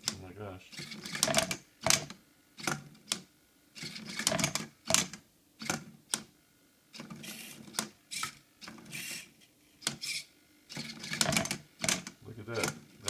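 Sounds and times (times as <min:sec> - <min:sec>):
servo motors whirring: 0:07.2 - 0:09.3, 0:10.0 - 0:11.3.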